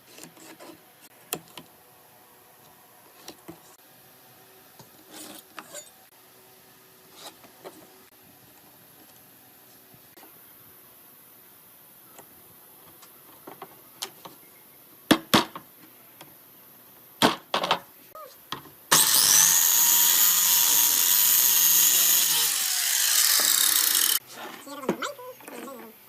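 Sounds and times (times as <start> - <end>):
power tool whining: 18.9 - 24.2.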